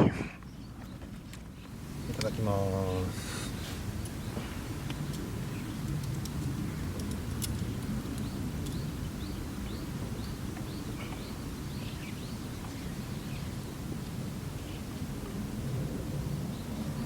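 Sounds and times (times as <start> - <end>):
steady low rumble: 1.5 - 17.0
campfire crackling and popping: 3.9 - 9.1
bird chirping: 7.6 - 13.9.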